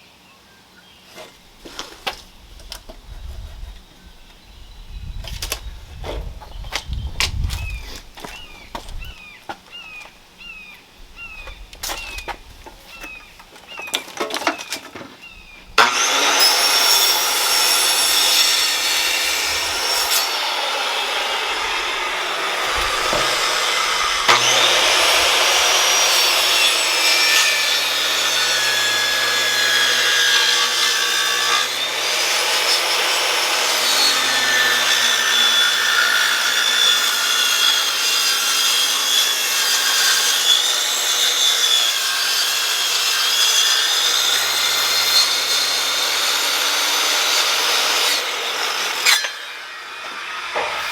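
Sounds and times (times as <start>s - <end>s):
circular saw cutting wood: 15.8s - 50.9s.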